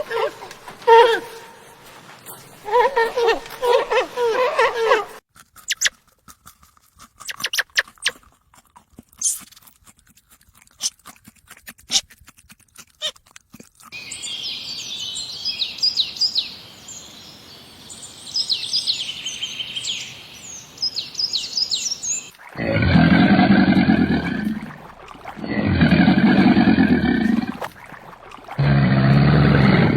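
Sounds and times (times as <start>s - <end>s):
birds chirping: 0.0s - 5.2s, 14.0s - 29.9s
low animal calls: 0.0s - 5.2s, 22.4s - 29.9s.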